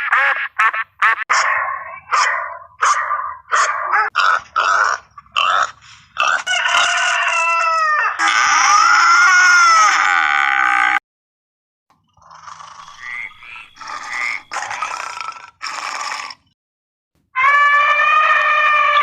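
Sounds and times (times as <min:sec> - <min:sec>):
rooster crowing: 0:06.4 - 0:08.2.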